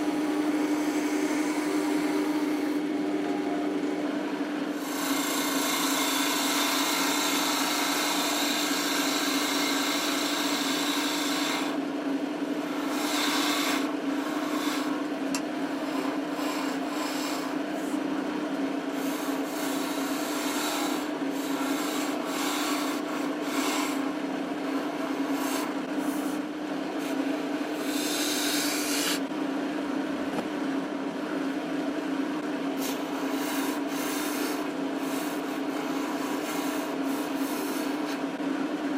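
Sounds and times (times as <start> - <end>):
wood lathe motor hum: 0.0 - 18.2, 18.8 - 29.3, 32.8 - 38.3
tool rasping against wood: 4.8 - 11.8, 12.7 - 15.0, 15.8 - 18.0, 19.0 - 24.1, 24.7 - 26.4, 27.8 - 29.2, 32.8 - 38.2.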